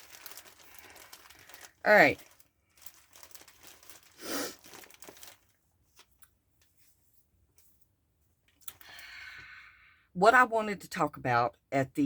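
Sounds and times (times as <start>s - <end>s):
plastic packaging clicks: 0.0s - 6.3s
plastic packaging rustle: 0.0s - 7.1s.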